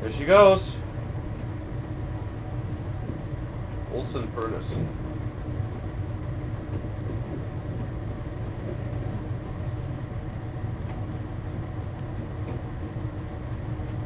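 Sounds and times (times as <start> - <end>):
furnace low rumble: 0.0 - 14.0.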